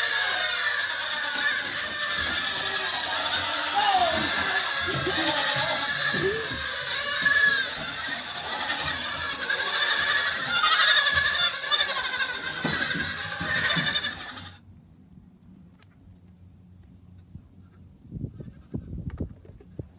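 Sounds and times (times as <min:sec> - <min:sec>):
goat bleating: 0:00.0 - 0:14.6.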